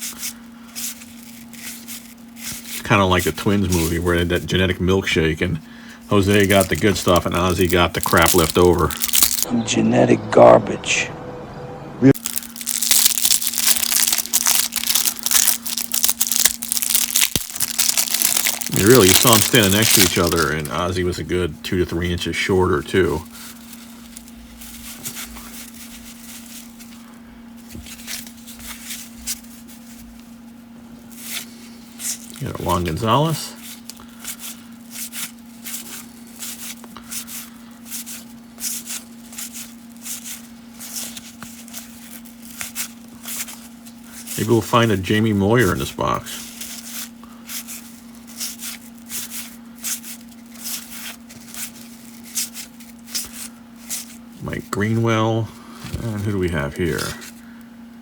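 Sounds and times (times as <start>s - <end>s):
cards rustling and sliding: 0.0s - 4.5s, 6.1s - 9.5s, 12.2s - 21.0s, 31.1s - 44.9s, 46.4s - 54.2s
steady low hum: 0.0s - 58.0s.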